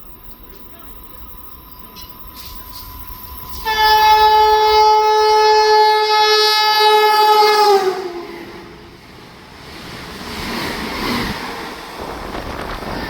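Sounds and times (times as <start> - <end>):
passing train rumble: 0.0 - 13.0
train horn: 3.5 - 8.8.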